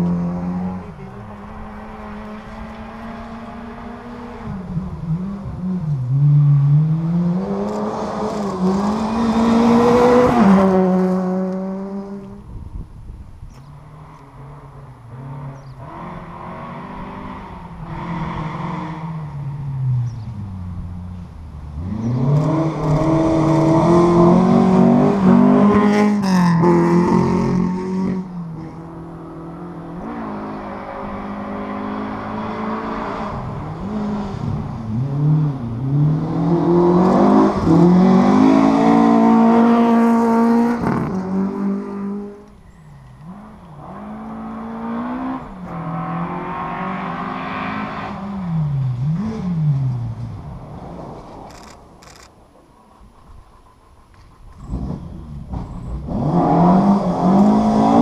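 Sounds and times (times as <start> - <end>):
rally car engines revving: 0.0 - 12.4, 13.6 - 51.9, 52.8 - 58.0.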